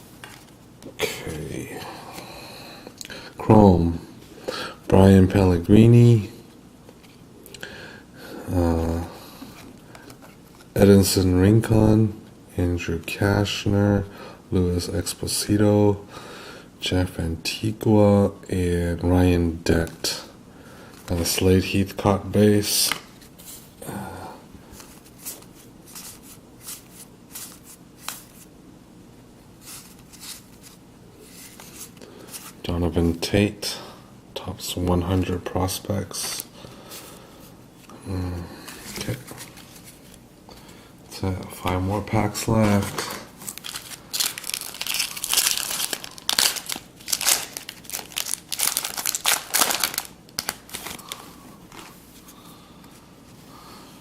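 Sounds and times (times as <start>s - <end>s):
wrapper crinkling and tearing: 43.4s - 51.9s.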